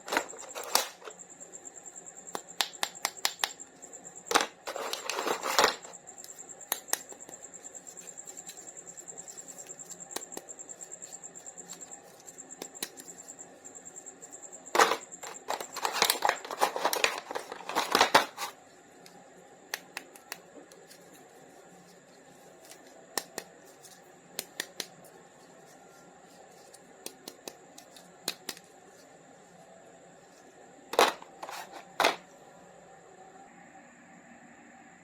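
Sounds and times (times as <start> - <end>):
packaging crinkling: 4.6 - 13.4, 14.7 - 18.6.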